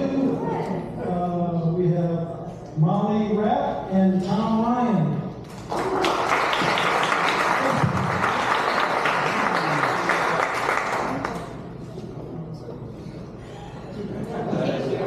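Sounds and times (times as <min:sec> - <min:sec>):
faint murmur of voices: 0:00.0 - 0:06.1, 0:09.3 - 0:15.0
crowd applauding and cheering: 0:05.5 - 0:11.7.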